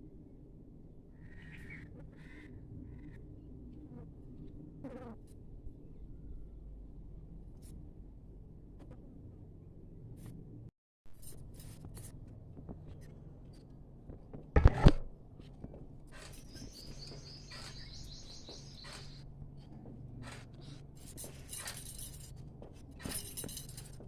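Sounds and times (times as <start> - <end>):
low steady hum: 0.0 - 17.4
small bird chirping: 16.2 - 19.3.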